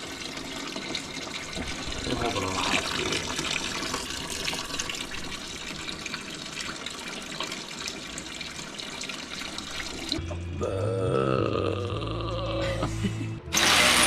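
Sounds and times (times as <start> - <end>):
liquid pouring into a bucket: 0.0 - 10.2.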